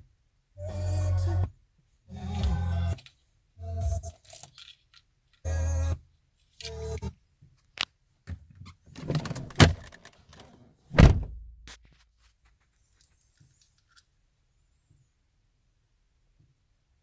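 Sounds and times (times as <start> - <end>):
heavy thumps: 10.9 - 11.7.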